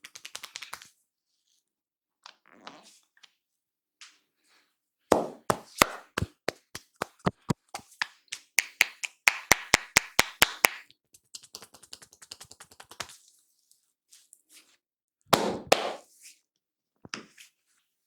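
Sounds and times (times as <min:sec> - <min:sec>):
hands slapping on head: 0:05.1 - 0:10.8, 0:11.4 - 0:13.2, 0:15.3 - 0:16.0.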